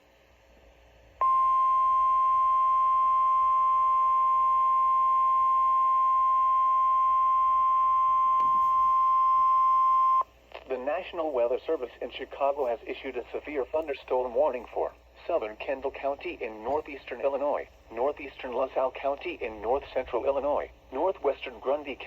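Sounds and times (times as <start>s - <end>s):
steady warning alarm beep: 1.2s - 10.2s.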